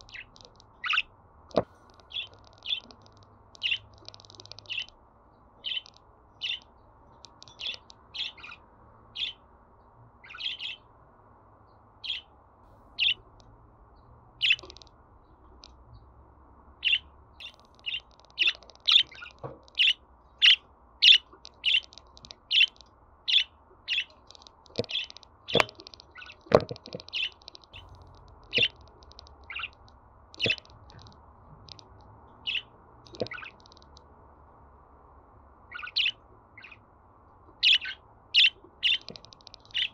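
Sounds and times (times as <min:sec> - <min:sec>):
budgerigar chirping: 0:00.0 - 0:03.0, 0:03.6 - 0:04.9, 0:05.6 - 0:06.7, 0:07.4 - 0:09.4, 0:10.2 - 0:10.9, 0:12.0 - 0:12.3, 0:13.0 - 0:13.2, 0:14.4 - 0:14.8, 0:16.8 - 0:29.8, 0:30.4 - 0:30.7, 0:32.4 - 0:33.6, 0:35.7 - 0:36.9, 0:37.5 - 0:39.9.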